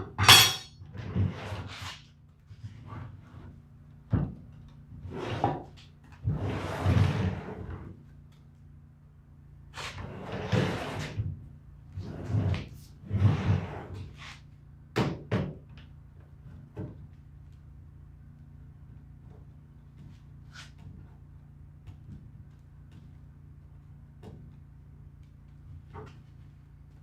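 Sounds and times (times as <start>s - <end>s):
scraping and sliding: 5.0s - 7.8s, 9.8s - 11.2s, 11.9s - 14.5s
knocks and clunks on workbench: 15.0s - 15.7s.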